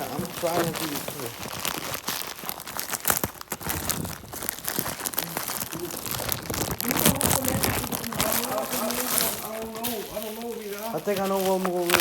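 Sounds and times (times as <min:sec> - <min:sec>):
packaging crinkling and tearing: 0:00.0 - 0:12.0.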